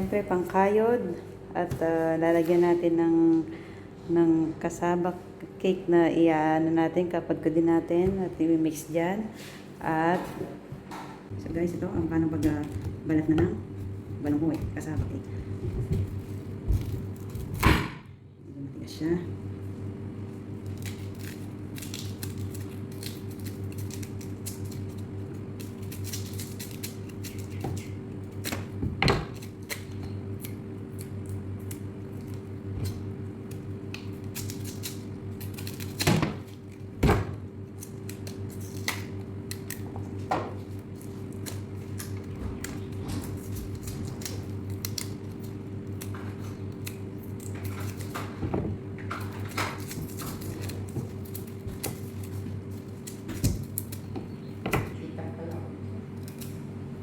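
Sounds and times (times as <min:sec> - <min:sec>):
low hum: 0:00.0 - 0:57.0
knife scraping peel: 0:20.6 - 0:36.9, 0:40.7 - 0:48.3, 0:49.2 - 0:54.1.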